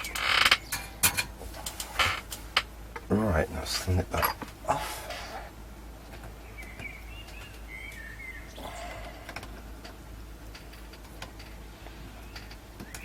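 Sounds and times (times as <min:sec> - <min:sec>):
steady low hum: 0:00.0 - 0:13.0
small bird chirping: 0:06.2 - 0:09.2, 0:11.8 - 0:13.0.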